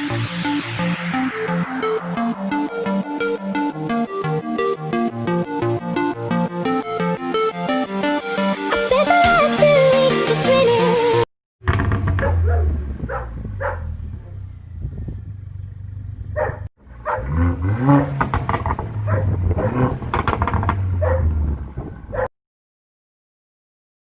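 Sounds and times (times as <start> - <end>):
exhaust crackles and pops: 11.6 - 16.6, 17.2 - 22.2
car engine revving: 11.6 - 22.2.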